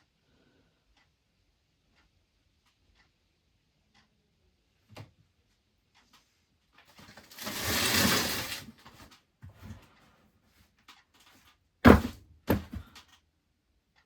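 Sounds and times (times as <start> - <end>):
sharp thuds: 11.8 - 12.9.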